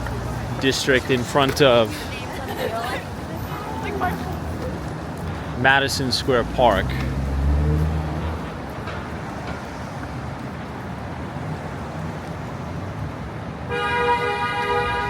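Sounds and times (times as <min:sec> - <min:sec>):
city street traffic: 0:00.0 - 0:15.0
car horn honking: 0:13.7 - 0:15.0.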